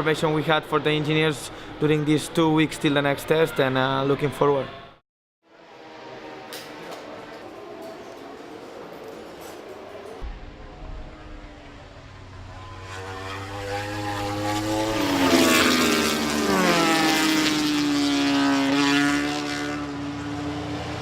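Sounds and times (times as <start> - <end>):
racing motorcycle passing at speed: 5.5 - 21.0.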